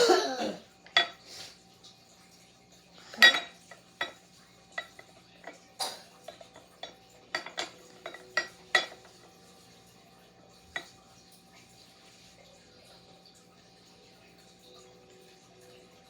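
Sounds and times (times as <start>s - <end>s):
utensil clinking against crockery: 0.0s - 1.4s, 3.0s - 9.5s.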